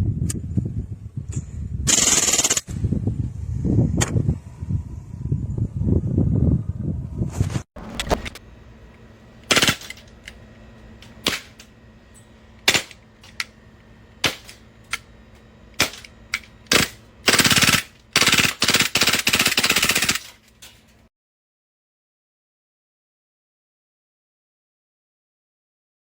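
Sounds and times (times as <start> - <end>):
airsoft pistol firing: 9.5 - 10.0, 16.7 - 20.2.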